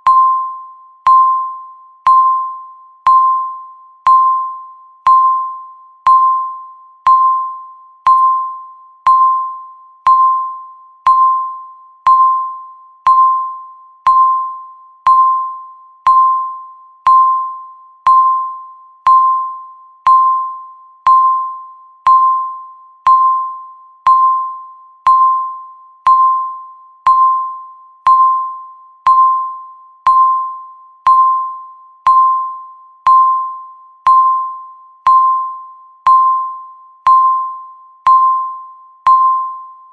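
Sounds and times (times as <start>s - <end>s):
countdown timer beeps: 0.0s - 39.9s.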